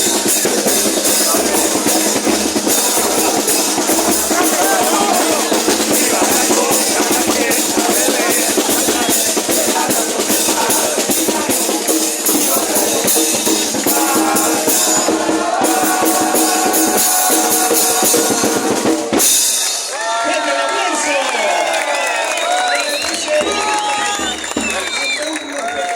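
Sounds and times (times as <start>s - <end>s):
choir singing: 0.0s - 19.4s
bass drum cymbals and snare: 0.0s - 19.9s.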